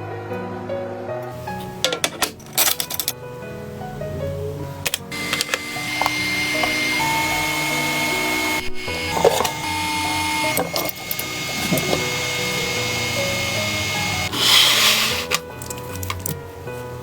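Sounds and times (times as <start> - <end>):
music of long held tones: 3.2 - 14.4.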